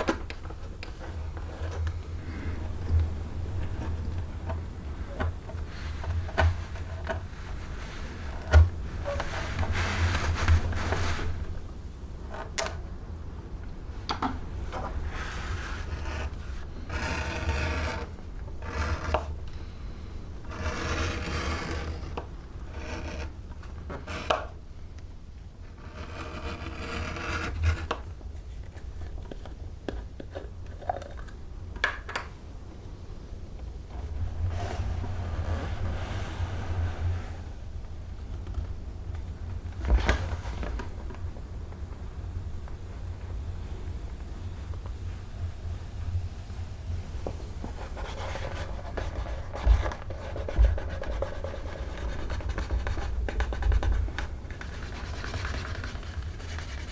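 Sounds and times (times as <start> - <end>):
leather rubbing and scraping: 0.4 - 12.4, 34.0 - 45.0.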